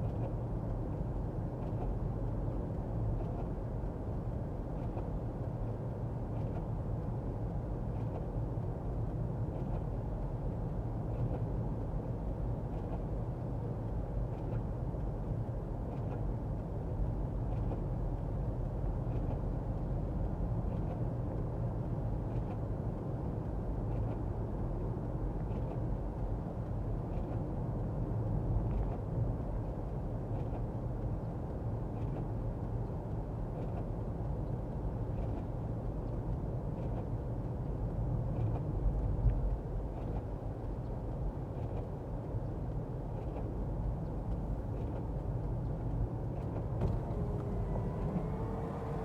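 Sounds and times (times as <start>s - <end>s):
car engine hum: 43.6s - 49.0s
tyre noise on wet road: 46.6s - 49.0s.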